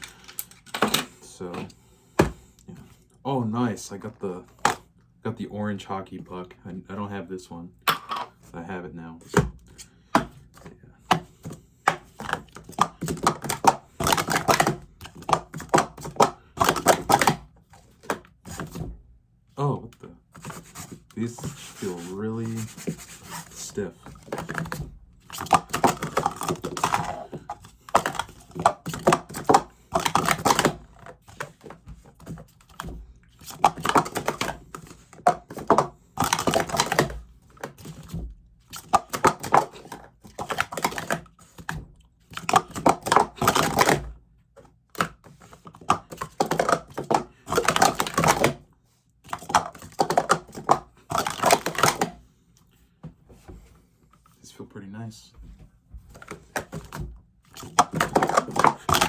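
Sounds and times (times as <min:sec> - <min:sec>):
plastic cups clacking: 0:09.3 - 0:18.8, 0:20.4 - 0:44.1, 0:44.9 - 0:48.6, 0:49.2 - 0:52.2, 0:56.1 - 0:59.0.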